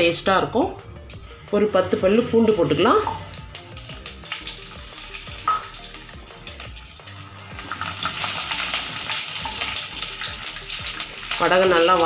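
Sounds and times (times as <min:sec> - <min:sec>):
spices sizzling in hot oil: 0:02.7 - 0:12.0.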